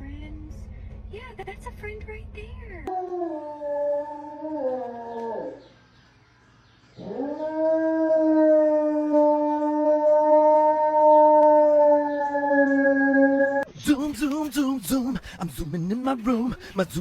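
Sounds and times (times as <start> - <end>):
dog howling: 2.9 - 5.8, 7.0 - 13.7.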